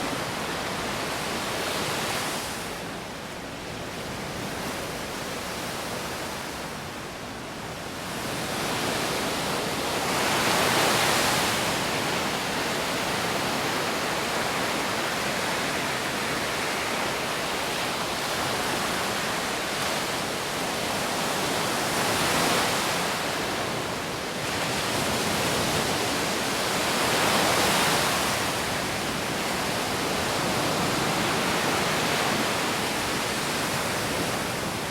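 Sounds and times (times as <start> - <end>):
wind: 0.0 - 34.9.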